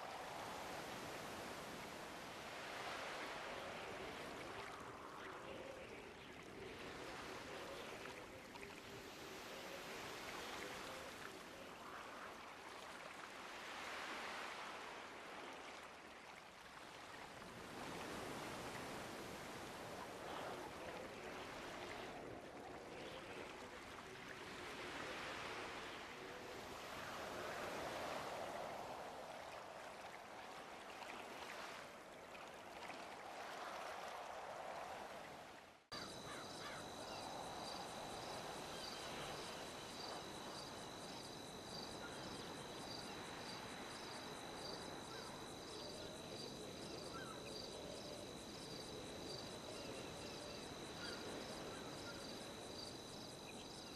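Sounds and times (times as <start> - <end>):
rushing water: 0.0 - 53.9
pulsed insect trill: 36.0 - 53.9.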